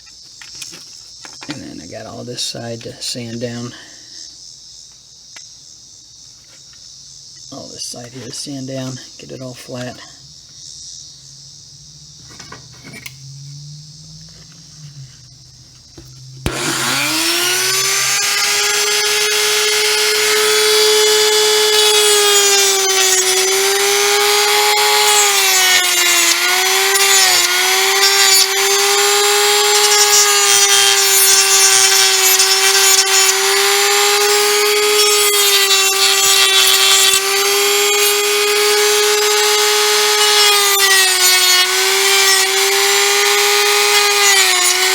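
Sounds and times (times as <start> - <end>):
rotary tool whining: 11.6 - 44.9
rotary tool sanding plastic: 14.4 - 44.9.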